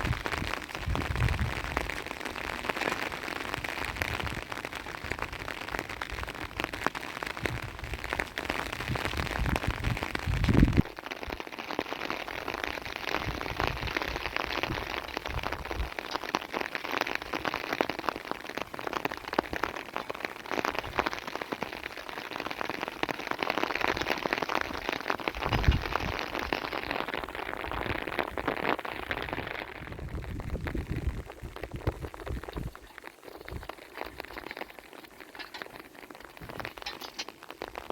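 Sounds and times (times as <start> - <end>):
rain falling: 0.0 - 37.9.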